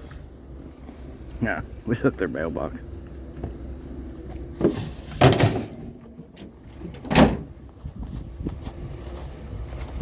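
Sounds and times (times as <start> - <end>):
vehicle idling hum: 0.0 - 10.0
loud bangs and clunks: 4.6 - 7.6.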